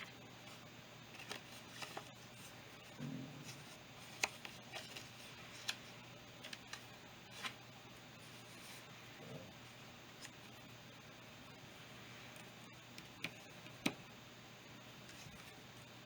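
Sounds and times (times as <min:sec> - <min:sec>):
trading cards clicking and rustling: 0:00.6 - 0:02.4, 0:03.4 - 0:07.6.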